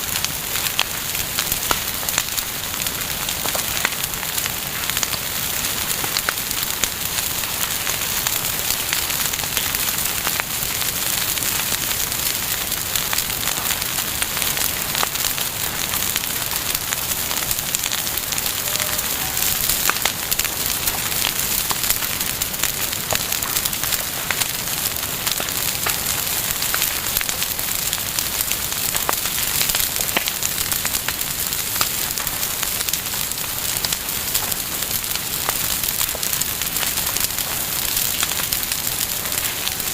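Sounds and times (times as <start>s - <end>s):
burning wood crackling and popping: 0.0s - 39.9s
campfire flames hissing: 0.0s - 39.9s.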